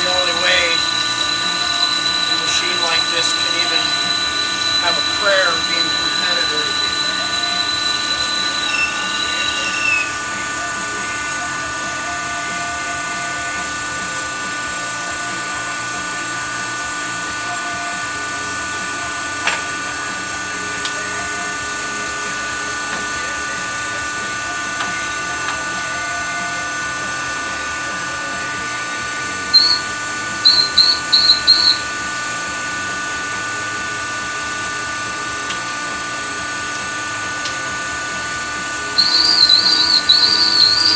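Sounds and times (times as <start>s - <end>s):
short high squeals: 0.0s - 10.2s, 29.5s - 31.9s, 39.0s - 40.9s
lathe whining: 0.0s - 17.4s, 18.0s - 40.9s.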